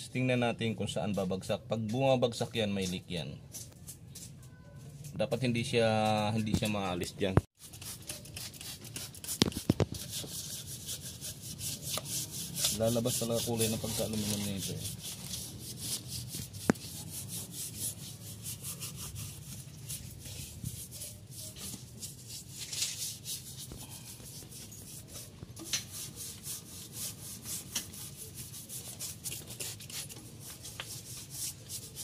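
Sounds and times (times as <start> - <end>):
scrubbing on metal: 7.6 - 32.0.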